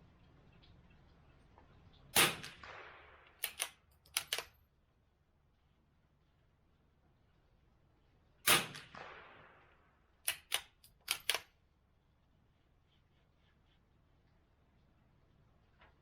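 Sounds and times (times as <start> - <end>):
rifle shot: 2.2 - 4.4, 8.4 - 11.4
rifle bolt metallic clicks: 3.4 - 4.6, 10.3 - 11.5.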